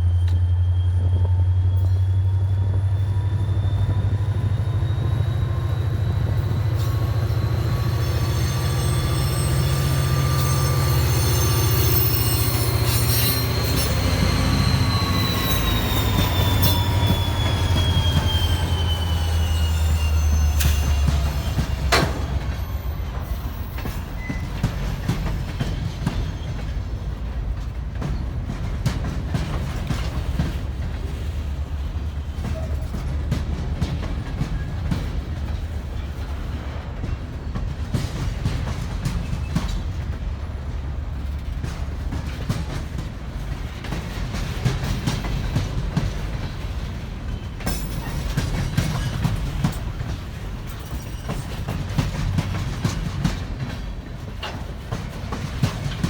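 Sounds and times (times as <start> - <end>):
train low rumble: 0.0 - 56.0
train wheels clicking over rail joints: 0.0 - 56.0.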